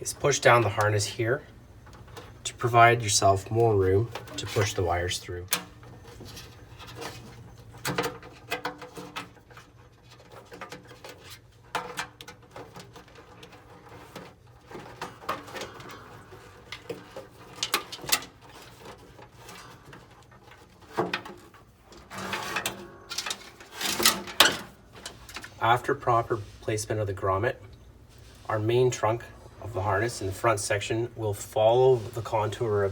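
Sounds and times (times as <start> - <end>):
wire bundle rustling: 12.5 - 26.9.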